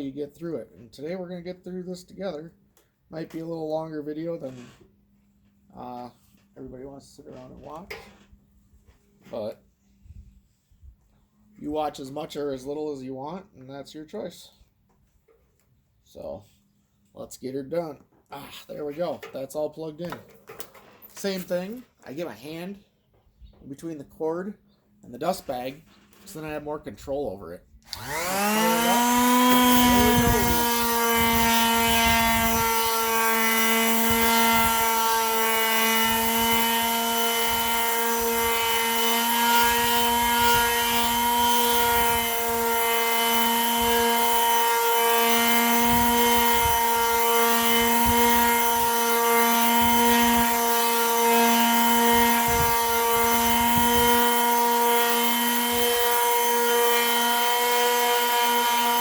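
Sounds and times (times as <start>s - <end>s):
electric sander humming: 27.9s - 59.0s.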